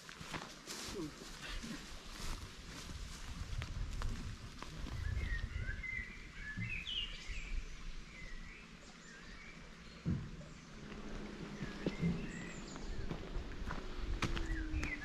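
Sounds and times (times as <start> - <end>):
thump: 10.0 - 10.4
low rumble: 10.2 - 15.0.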